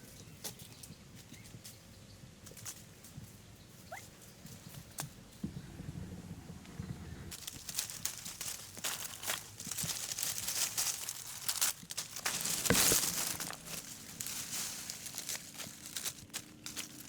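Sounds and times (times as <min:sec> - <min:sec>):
rustling handling noise: 0:07.3 - 0:17.0.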